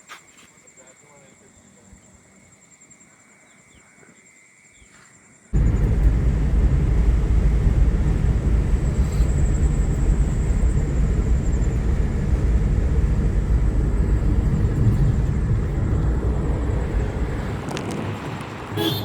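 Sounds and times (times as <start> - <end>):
car driving on road: 5.6 - 19.0.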